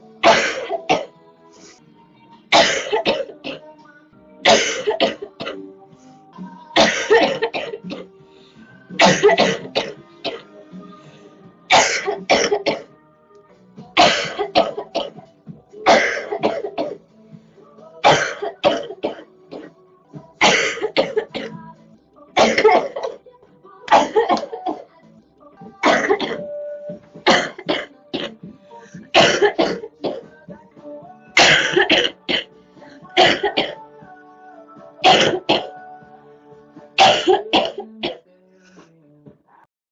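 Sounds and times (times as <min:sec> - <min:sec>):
faint background music: 0:00.0 - 0:39.7
girl coughing: 0:00.2 - 0:01.1, 0:02.5 - 0:03.6, 0:04.4 - 0:05.6, 0:06.8 - 0:08.1, 0:09.0 - 0:10.4, 0:11.7 - 0:12.9, 0:14.0 - 0:15.2, 0:15.9 - 0:17.0, 0:18.1 - 0:19.7, 0:20.4 - 0:21.6, 0:22.4 - 0:23.2, 0:23.9 - 0:24.9, 0:25.8 - 0:26.4, 0:27.3 - 0:28.4, 0:29.1 - 0:30.3, 0:31.4 - 0:32.5, 0:33.2 - 0:33.8, 0:35.0 - 0:35.7, 0:37.0 - 0:38.2.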